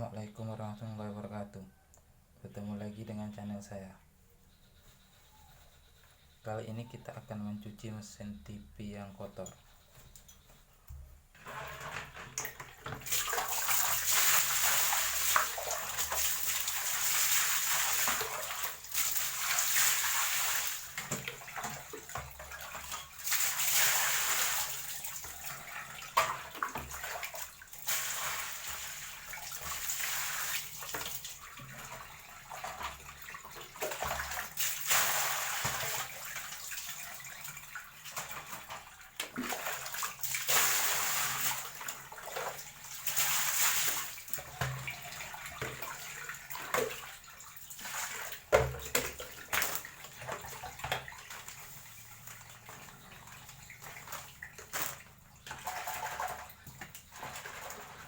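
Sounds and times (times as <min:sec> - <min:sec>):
water spraying and splashing: 0:12.9 - 0:58.0.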